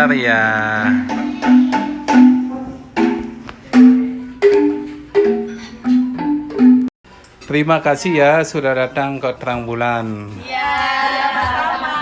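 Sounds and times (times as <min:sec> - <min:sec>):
mallet percussion melody: 0:00.0 - 0:06.9.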